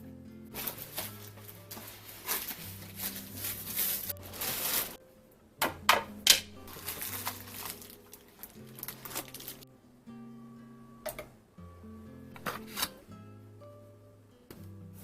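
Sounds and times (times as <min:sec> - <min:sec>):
soft background music: 0:00.0 - 0:15.0
plastic packaging rustling: 0:00.5 - 0:05.0, 0:06.4 - 0:09.6.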